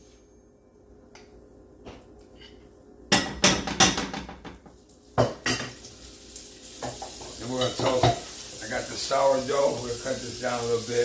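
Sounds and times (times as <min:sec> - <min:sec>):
cookware and utensils clattering: 0:02.3 - 0:05.9, 0:06.8 - 0:08.3.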